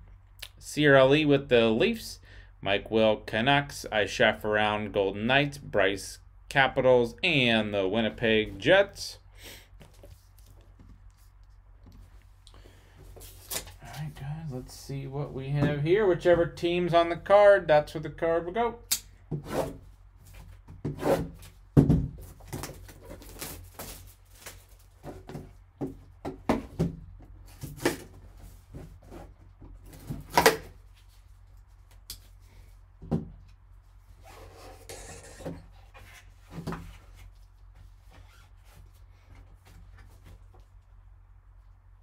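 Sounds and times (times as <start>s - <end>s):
cardboard and plastic rustling: 21.3s - 32.4s.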